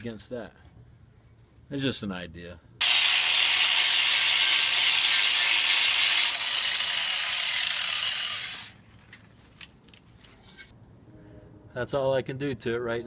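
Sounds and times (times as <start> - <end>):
angle grinder grinding steel: 2.8 - 8.8.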